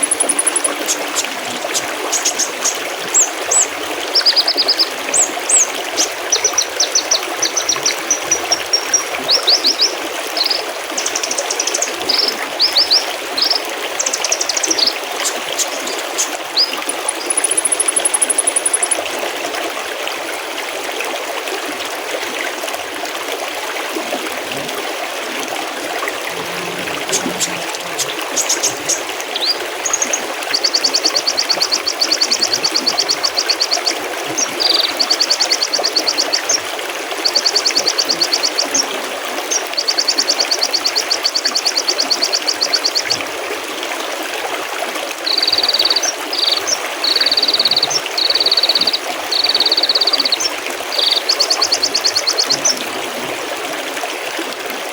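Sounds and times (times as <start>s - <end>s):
songbird trilling: 0.0s - 19.0s, 26.3s - 34.0s, 45.3s - 52.8s
stream babbling: 0.0s - 54.9s.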